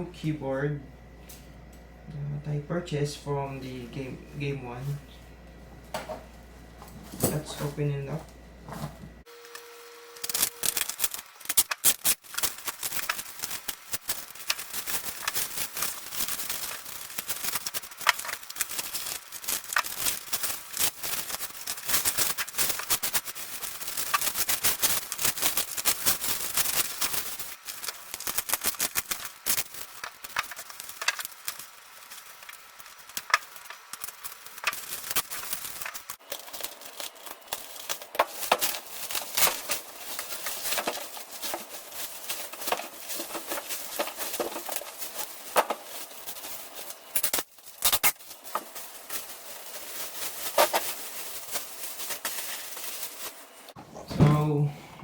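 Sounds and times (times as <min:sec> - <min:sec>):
packaging rustling and crackling: 0:10.2 - 0:53.8.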